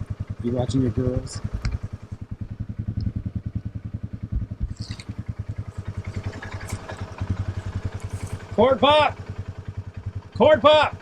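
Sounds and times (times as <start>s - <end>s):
small engine idling: 0.0s - 11.0s
rustle or scrape: 6.4s - 8.6s.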